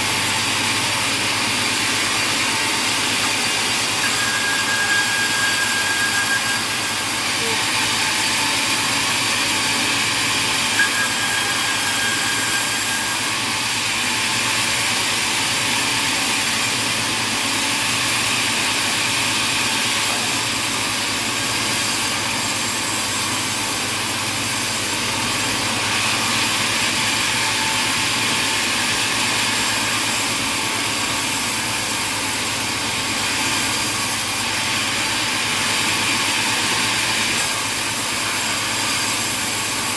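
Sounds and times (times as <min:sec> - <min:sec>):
sawmill machinery running: 0:00.0 - 0:39.9
thin whine: 0:02.8 - 0:13.9.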